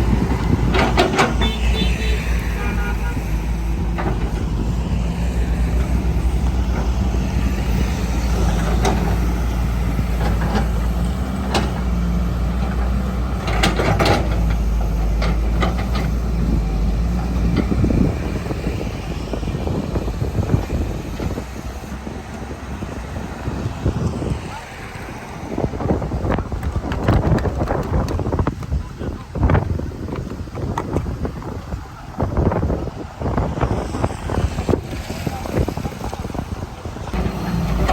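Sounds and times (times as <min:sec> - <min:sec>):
excavator diesel engine running: 0:00.0 - 0:28.1, 0:36.6 - 0:37.9.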